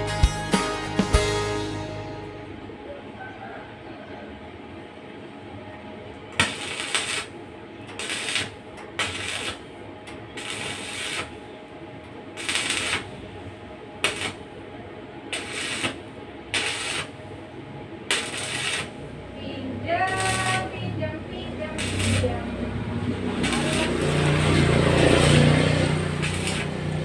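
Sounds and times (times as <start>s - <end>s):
crackling welding arc hiss: 6.3s - 14.6s, 15.2s - 17.4s, 18.0s - 19.3s, 20.0s - 27.0s.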